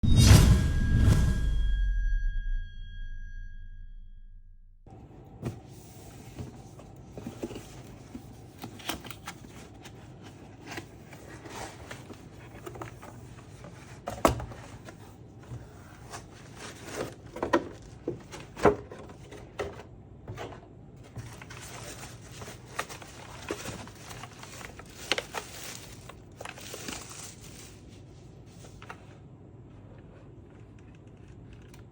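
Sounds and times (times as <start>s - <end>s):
packaging being handled: 6.2s - 15.0s, 15.7s - 28.9s.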